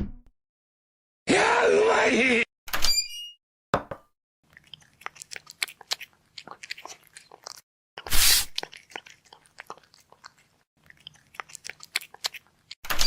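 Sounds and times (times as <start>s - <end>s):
crunching and chewing: 4.4s - 13.0s.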